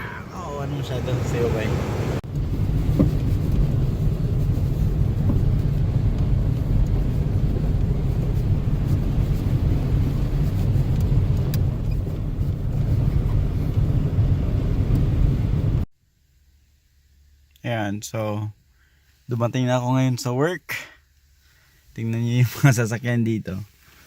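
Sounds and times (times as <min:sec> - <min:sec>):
car engine and road noise: 0:00.0 - 0:15.9.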